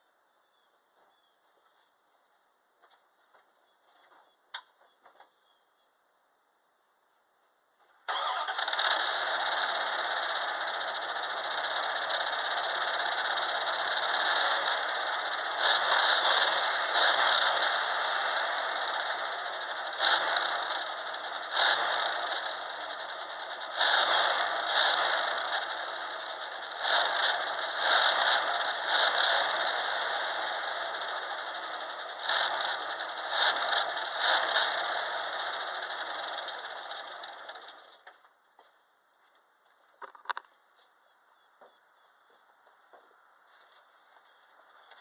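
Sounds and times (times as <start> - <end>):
car engine revving in blips: 8.1 - 37.9
car engine starting and idling: 8.1 - 38.1.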